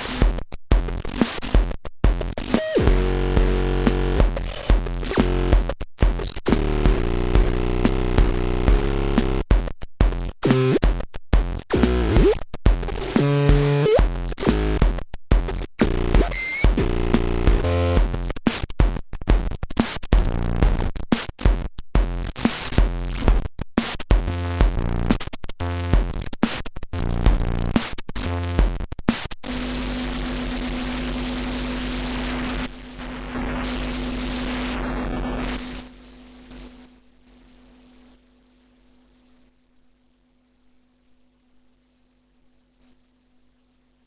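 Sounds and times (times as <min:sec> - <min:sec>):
pulsing kick drum: 0:09.5 - 0:10.2.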